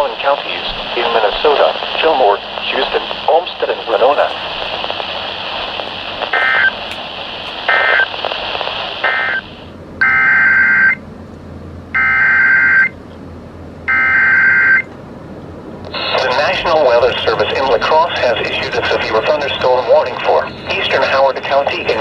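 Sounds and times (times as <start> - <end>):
radio hiss: 0.0 - 9.8, 15.8 - 22.0
digital data bursts screeching: 6.3 - 6.9.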